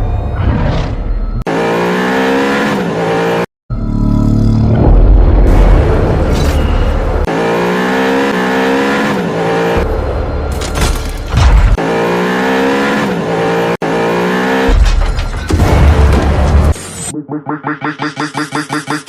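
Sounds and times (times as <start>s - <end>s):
music with heavy bass: 17.1s - 19.0s.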